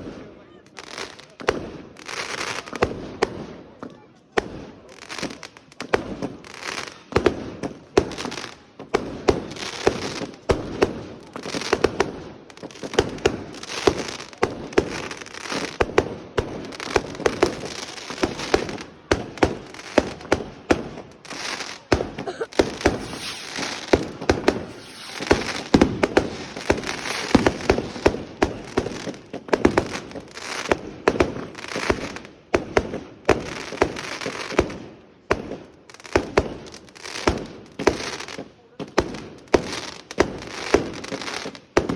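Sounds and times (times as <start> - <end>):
fireworks bangs and crackles: 0.0 - 41.9.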